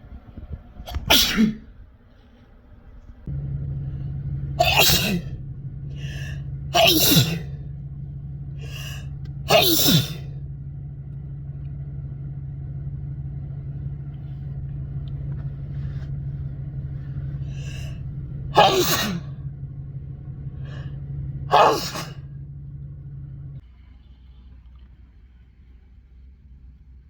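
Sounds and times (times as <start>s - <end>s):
steady low hum: 0.0s - 27.0s
person sneezing: 1.0s - 1.7s, 4.6s - 5.3s, 6.0s - 7.5s, 8.6s - 10.2s, 18.6s - 19.3s, 21.5s - 22.2s
sharp intake of breath: 5.9s - 7.5s, 8.6s - 10.2s, 17.4s - 18.1s.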